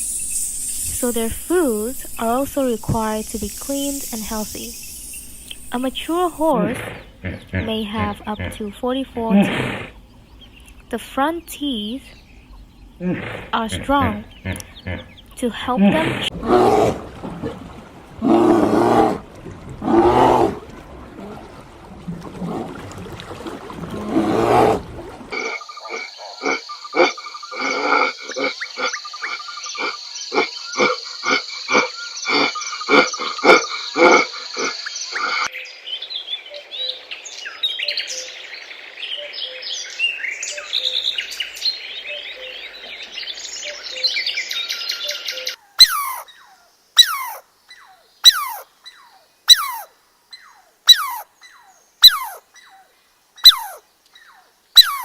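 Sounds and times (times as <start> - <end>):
chirping birdsong: 0.0 - 16.9, 25.3 - 55.0
rhythmic croaking: 0.6 - 10.0, 12.9 - 16.4
loud low animal calls: 5.6 - 10.4, 12.9 - 21.5, 23.8 - 35.5, 45.5 - 47.4, 48.2 - 48.7, 49.5 - 49.9, 50.9 - 51.3, 52.0 - 52.4, 53.4 - 53.8, 54.8 - 55.0
sharp high calls: 45.8 - 46.3, 47.0 - 47.4, 48.3 - 48.6, 49.5 - 49.9, 50.9 - 51.3, 52.0 - 52.4, 53.4 - 53.8, 54.8 - 55.0.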